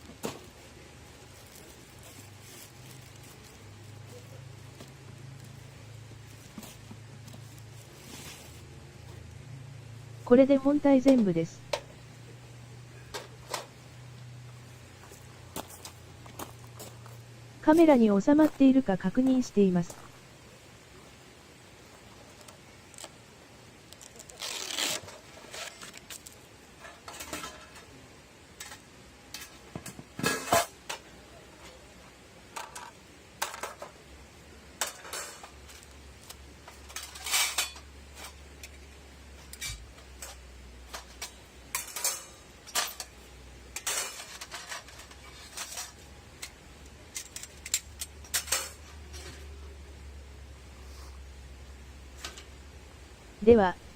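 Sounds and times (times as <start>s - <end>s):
metal parts clinking and clanking: 36.8s - 37.9s, 39.5s - 46.5s, 47.1s - 49.4s.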